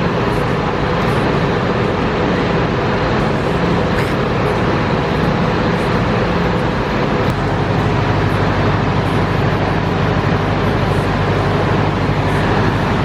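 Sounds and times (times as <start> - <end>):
faint hum: 0.0 - 13.0
loud steady background noise: 0.0 - 13.0.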